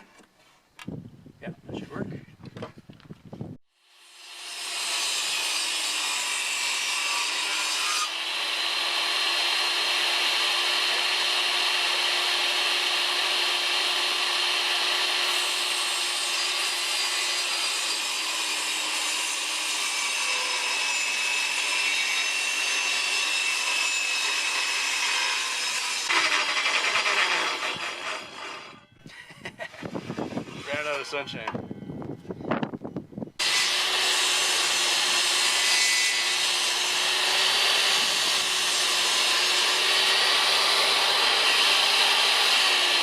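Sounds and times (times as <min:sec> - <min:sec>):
circular saw cutting wood: 0:03.8 - 0:28.9, 0:29.8 - 0:31.5, 0:33.4 - 0:43.0.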